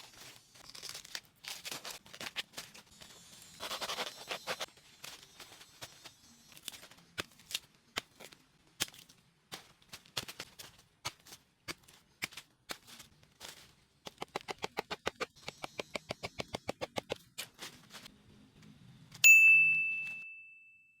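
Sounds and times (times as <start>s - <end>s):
bright ding: 19.2s - 21.0s.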